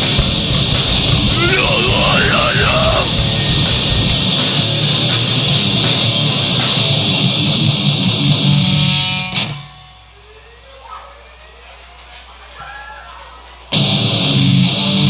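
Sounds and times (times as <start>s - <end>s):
live rock band playing: 0.0s - 10.0s.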